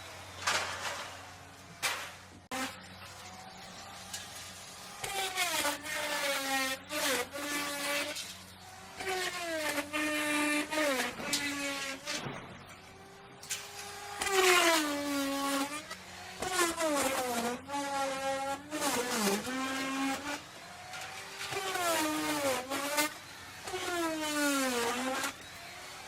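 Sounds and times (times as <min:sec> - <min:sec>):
wood router cutting wood: 0:00.0 - 0:26.0.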